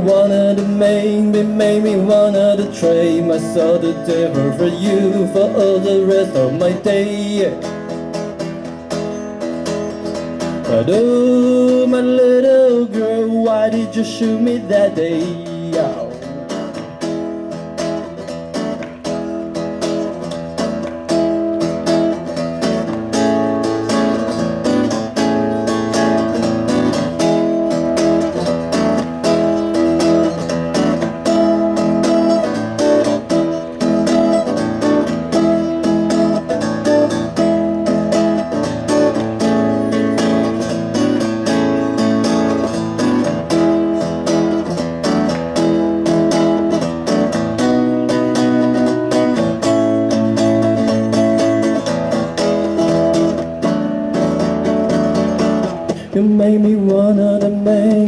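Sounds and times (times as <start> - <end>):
acoustic guitar strumming: 0.0 - 58.0
pop-rock song singing: 55.9 - 58.0.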